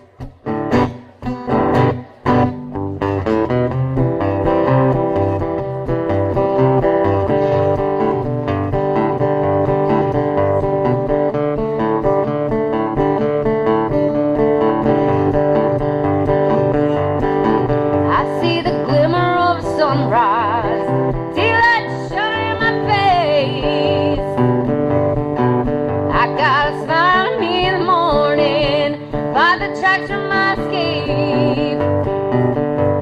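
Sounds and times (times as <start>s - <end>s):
acoustic guitar strumming: 0.0s - 33.0s.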